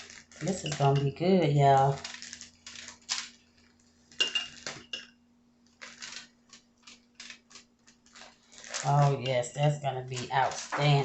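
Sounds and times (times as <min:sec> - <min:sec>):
utensils tapping and clicking: 0:00.0 - 0:03.4, 0:04.2 - 0:05.1, 0:05.7 - 0:11.0
dish clinking: 0:04.2 - 0:05.1.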